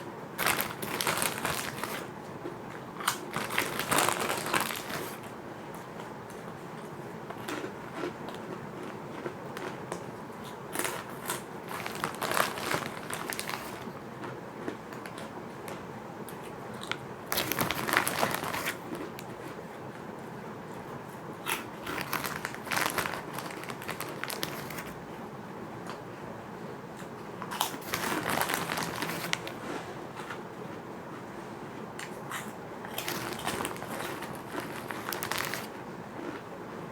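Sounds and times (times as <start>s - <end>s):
crunching crispy crackers: 0.4s - 2.1s, 2.7s - 6.4s, 7.3s - 15.4s, 16.3s - 19.6s, 21.4s - 25.0s, 27.0s - 29.8s, 32.0s - 36.5s.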